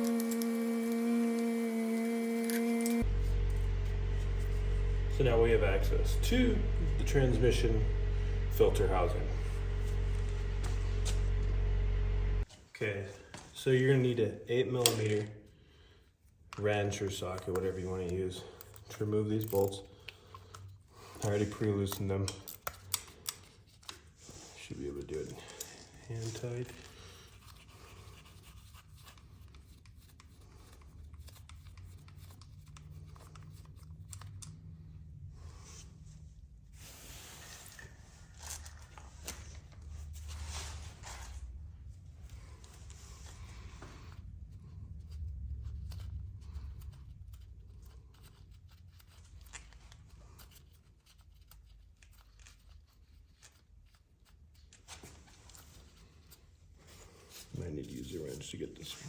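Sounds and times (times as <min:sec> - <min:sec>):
low steady hum: 0:02.8 - 0:13.2
low rumble of handling: 0:03.0 - 0:12.5.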